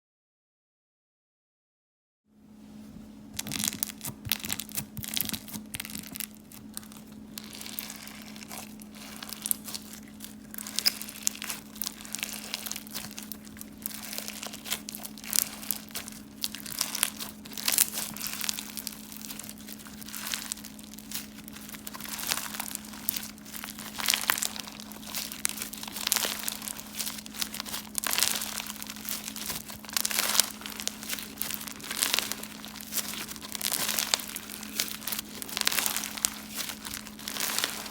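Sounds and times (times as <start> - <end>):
steady low hum: 2.3 - 37.9
crunchy slime crackling: 3.4 - 37.9.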